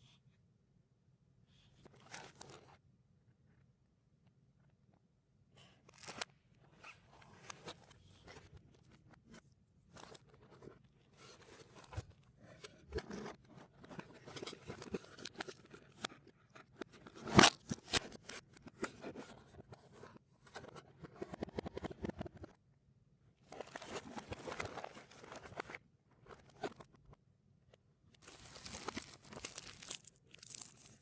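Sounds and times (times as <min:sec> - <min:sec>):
snack wrappers crinkling in reverse: 0:28.2 - 0:31.0.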